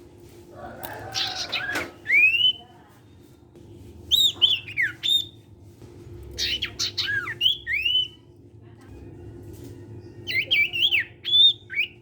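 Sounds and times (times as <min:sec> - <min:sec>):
songbird singing: 0:01.1 - 0:02.7, 0:06.4 - 0:08.3, 0:10.0 - 0:12.0
bird whistling: 0:01.3 - 0:02.6, 0:04.1 - 0:05.4, 0:06.4 - 0:08.2, 0:10.3 - 0:12.0.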